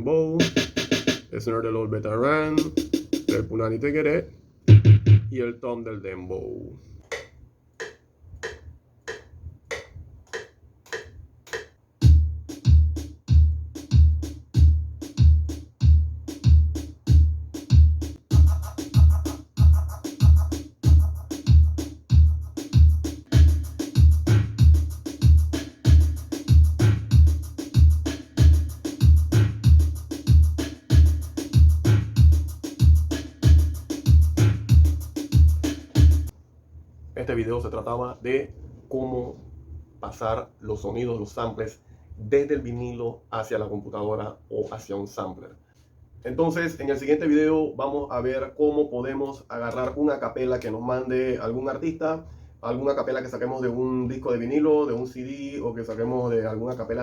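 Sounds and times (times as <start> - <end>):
hi-hats: 0.4 - 1.3, 2.5 - 3.5, 11.6 - 36.3
heavy kick drum: 4.7 - 5.4, 12.0 - 36.3
light percussion taps: 7.0 - 11.8.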